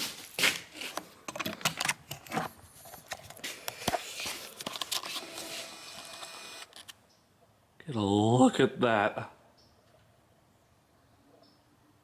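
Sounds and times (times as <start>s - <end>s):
handling clicks taps and rustling: 0.5s - 6.1s.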